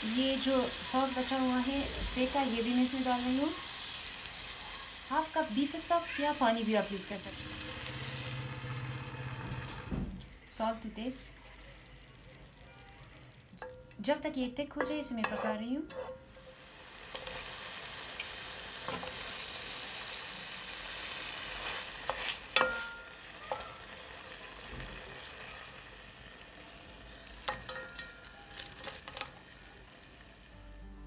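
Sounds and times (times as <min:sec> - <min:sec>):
sauce sizzling in a skillet: 0:00.0 - 0:14.3, 0:16.2 - 0:30.7
utensil scraping a pan: 0:15.1 - 0:17.5, 0:21.6 - 0:23.8.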